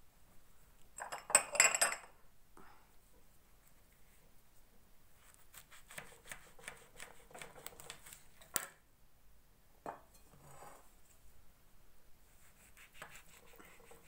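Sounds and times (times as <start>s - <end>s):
knife cutting through orange: 5.2s - 8.2s, 12.4s - 14.0s.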